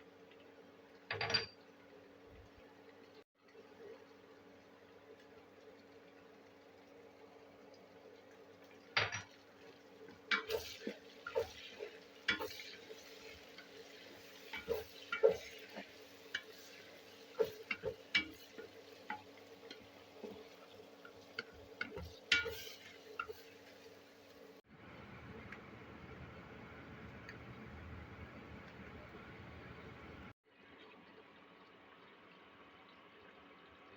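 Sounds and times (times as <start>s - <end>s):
spoon stirring in metal pot: 10.3s - 23.6s.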